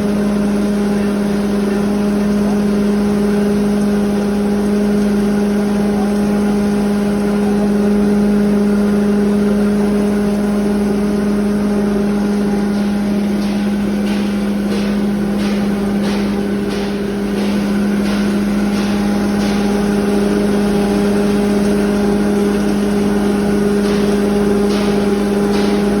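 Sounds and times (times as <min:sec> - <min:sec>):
feed grinder humming: 0:00.0 - 0:26.0
sharp knocks: 0:12.8 - 0:21.1, 0:22.6 - 0:26.0.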